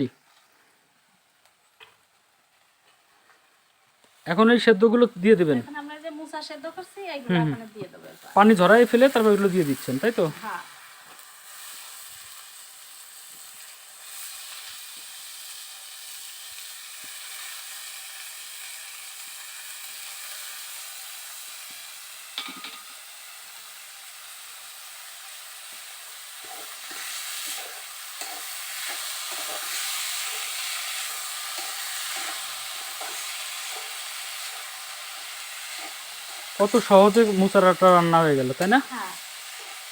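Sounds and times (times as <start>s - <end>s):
food sizzling in hot oil: 0.0s - 39.9s
spatula scraping pan: 26.4s - 34.7s.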